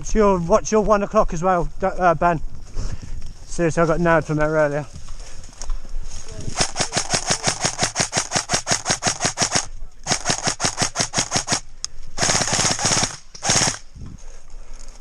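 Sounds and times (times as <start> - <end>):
airsoft guns firing full auto: 6.6 - 13.9.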